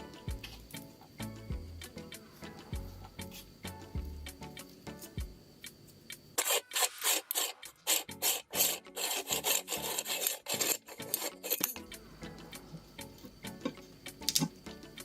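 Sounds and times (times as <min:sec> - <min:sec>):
meat grinder rasping: 0:06.4 - 0:11.6.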